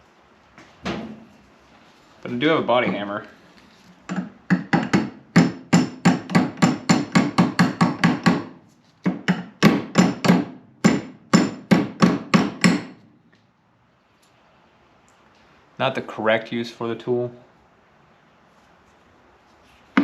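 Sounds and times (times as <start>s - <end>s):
hammer striking metal: 4.1s - 8.5s, 9.2s - 13.0s.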